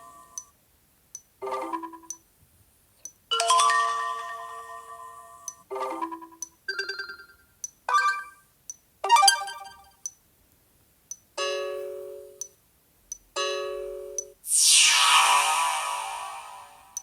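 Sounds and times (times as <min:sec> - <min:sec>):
phone notification chimes: 0:01.4 - 0:02.1.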